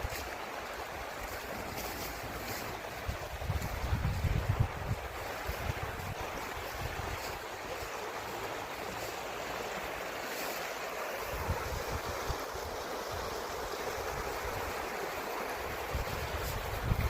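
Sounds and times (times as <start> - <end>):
river water rushing: 0.0 - 17.0
wind buffeting microphone: 3.0 - 7.5, 15.7 - 17.0.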